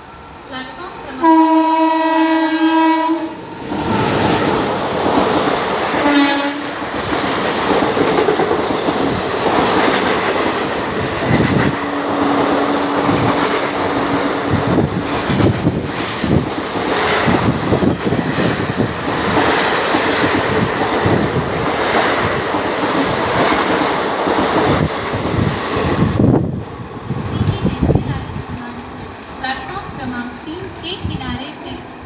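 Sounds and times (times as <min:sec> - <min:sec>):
train horn: 0:01.1 - 0:03.5, 0:06.0 - 0:06.8.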